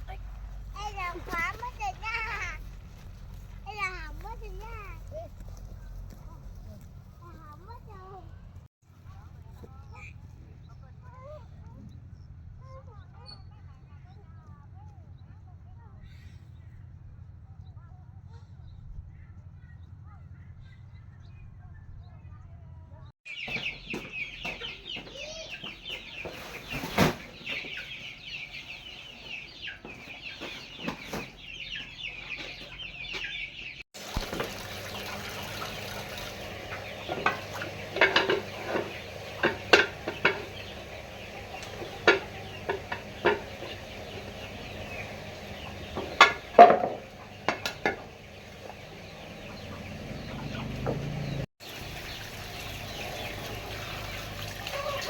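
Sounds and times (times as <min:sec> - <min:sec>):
chickens clucking and cheeping: 0:23.3 - 0:55.0
pots and dishes clinking: 0:34.0 - 0:50.0.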